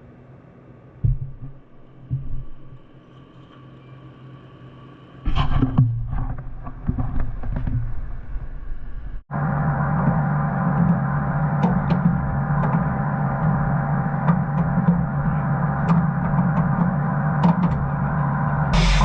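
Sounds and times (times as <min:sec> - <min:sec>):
machine running with clunks: 0:01.0 - 0:03.6, 0:05.3 - 0:19.0
machinery humming: 0:08.8 - 0:19.0.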